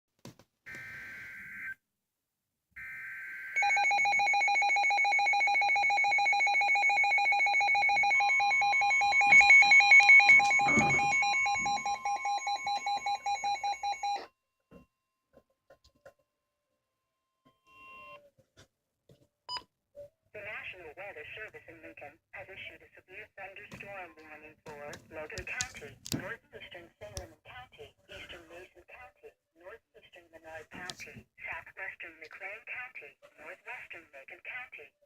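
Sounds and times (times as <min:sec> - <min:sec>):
pulsing alarm tone: 0:03.6 - 0:14.2
steady warning alarm tone: 0:03.6 - 0:14.2.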